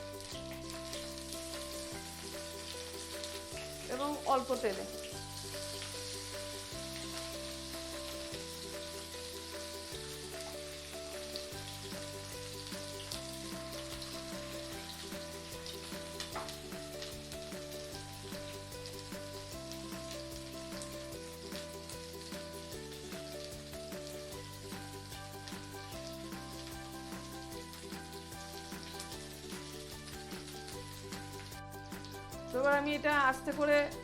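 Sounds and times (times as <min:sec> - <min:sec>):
oil sizzling and crackling: 0:00.0 - 0:34.0
soft background music: 0:00.0 - 0:34.0.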